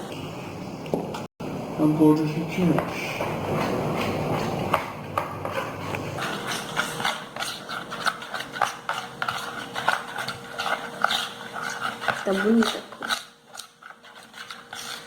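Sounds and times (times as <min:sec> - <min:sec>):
utensil scraping a container: 0:05.4 - 0:15.0.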